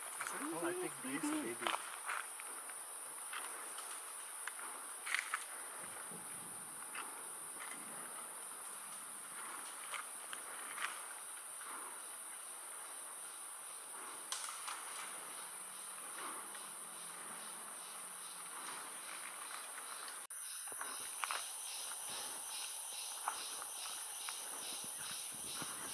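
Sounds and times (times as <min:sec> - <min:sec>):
forest insects droning: 0:00.0 - 0:25.9.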